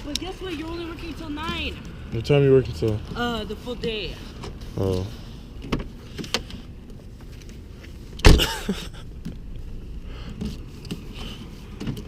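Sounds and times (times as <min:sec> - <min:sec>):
low rumble inside a car: 0:00.5 - 0:12.0
loud thump: 0:08.2 - 0:08.6.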